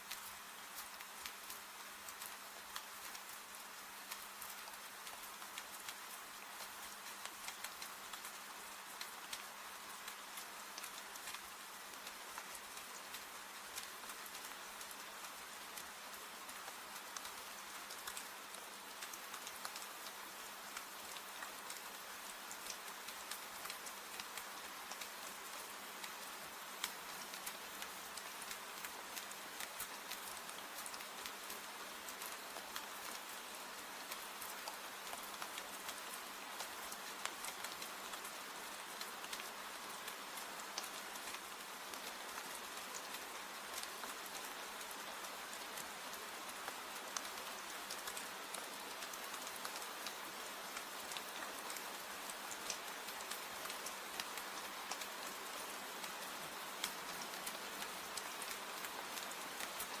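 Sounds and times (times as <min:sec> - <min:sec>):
steady rain falling: 0:00.0 - 1:00.0.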